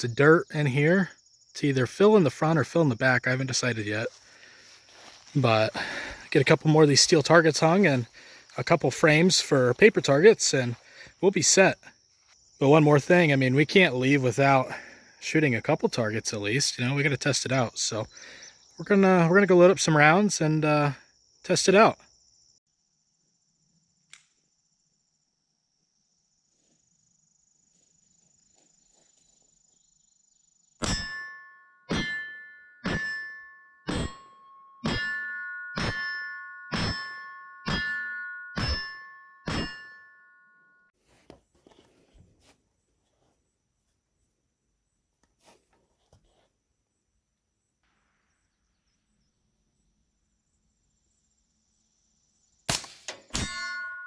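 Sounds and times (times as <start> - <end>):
crickets chirping: 0.0 - 30.8, 46.2 - 52.9
high insect trill: 0.0 - 30.9, 47.6 - 52.9
steel target ringing clang: 30.8 - 34.2, 34.8 - 40.1, 52.7 - 54.0
rifle shot: 52.7 - 53.6.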